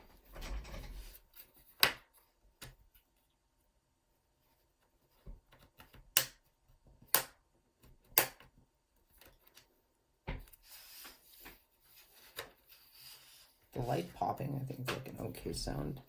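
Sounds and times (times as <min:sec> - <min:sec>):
scraping rub: 0:10.6 - 0:13.6.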